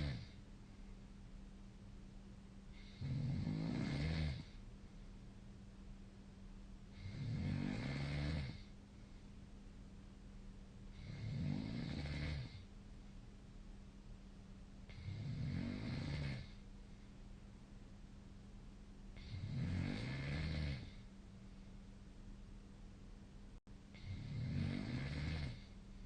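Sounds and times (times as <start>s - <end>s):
woman snoring: 0.0s - 0.4s, 2.7s - 4.6s, 6.9s - 8.7s, 10.9s - 12.6s, 14.9s - 16.6s, 19.2s - 21.1s, 23.9s - 25.7s.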